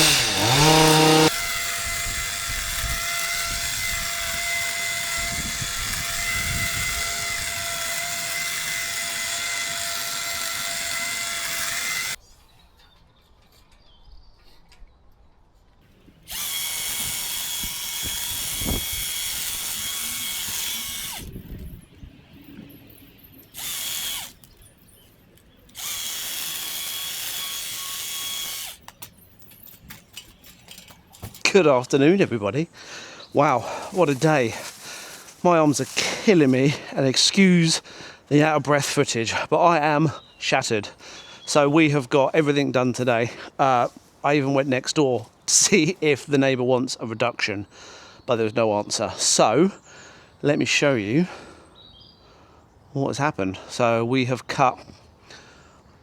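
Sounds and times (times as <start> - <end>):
power hedge trimmer running: 0.0 - 12.2, 16.2 - 21.4, 23.6 - 24.4, 25.7 - 28.8.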